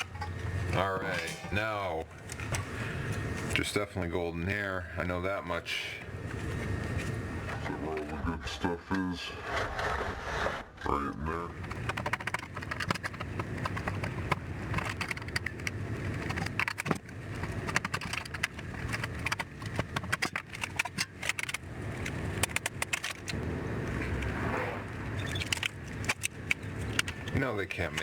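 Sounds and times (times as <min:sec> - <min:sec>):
metallic rattles: 0:00.0 - 0:02.6
tool clicks and scrapes: 0:11.6 - 0:23.4, 0:25.2 - 0:28.0.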